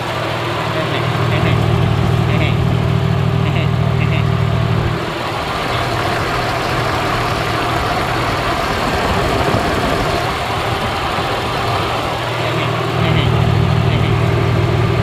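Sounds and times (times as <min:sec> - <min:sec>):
car engine idling: 0:00.0 - 0:15.0
steady rush of noise: 0:05.0 - 0:12.4.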